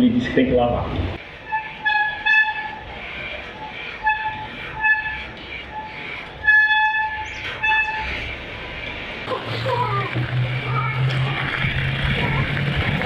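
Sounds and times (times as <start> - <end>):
disc brake honking: 1.4 - 2.9, 4.0 - 8.9.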